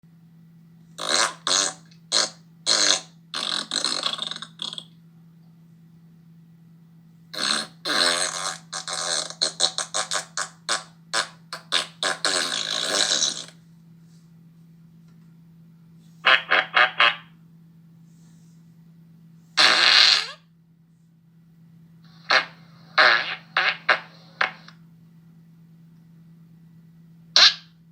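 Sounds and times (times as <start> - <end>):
steady low hum: 0.1 - 27.9
farts: 1.0 - 5.0, 7.3 - 13.6, 16.2 - 17.3, 19.6 - 20.5, 22.1 - 24.8, 27.4 - 27.8.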